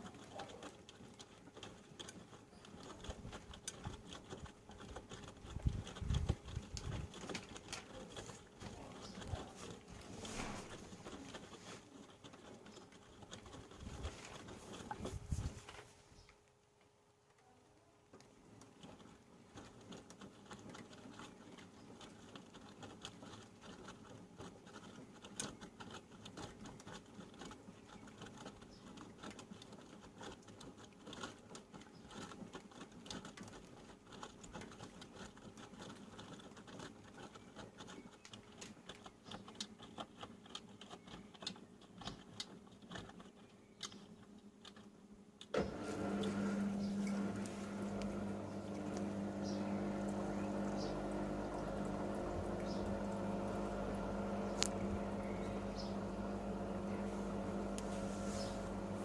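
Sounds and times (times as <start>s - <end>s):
wet laundry in washing machine drum: 45.5s - 59.0s
loud steady hum: 45.6s - 59.0s.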